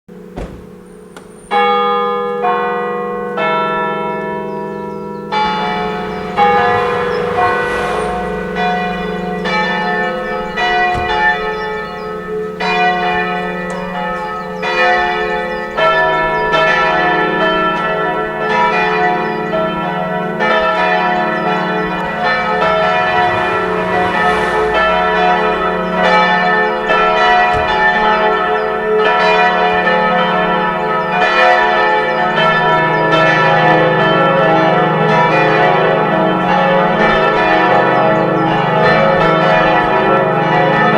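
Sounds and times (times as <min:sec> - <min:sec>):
church bells pealing: 0:01.5 - 0:40.9.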